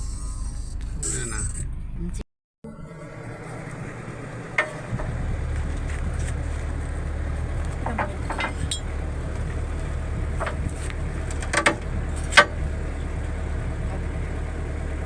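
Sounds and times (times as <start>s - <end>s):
engine idling: 2.9s - 15.0s
sharp metallic clinks: 7.7s - 9.5s.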